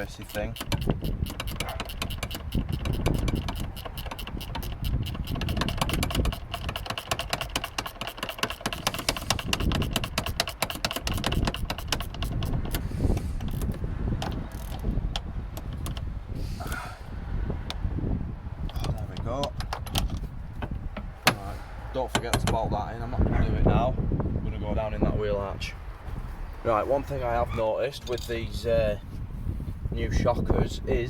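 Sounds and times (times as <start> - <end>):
ratchet spanner clicking: 0.0 - 16.1.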